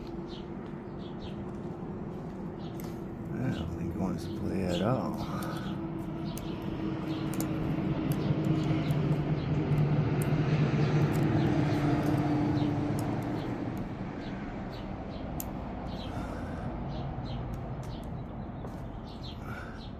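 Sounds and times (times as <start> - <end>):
engine drone passing: 0.0 - 19.9
faint light clicks: 5.1 - 10.4, 15.4 - 15.6.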